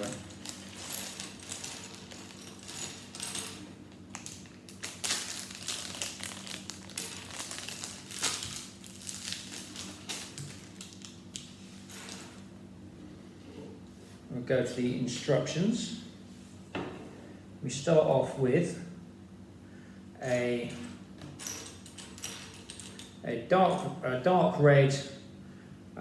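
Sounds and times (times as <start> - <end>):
plastic pieces clicking and rattling: 4.1 - 11.2.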